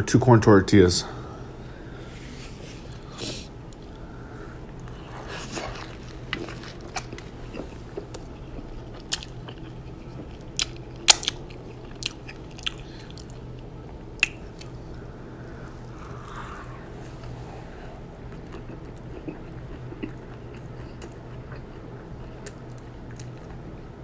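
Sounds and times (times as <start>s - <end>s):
biting and chewing crunchy food: 4.7s - 14.8s, 18.2s - 23.6s.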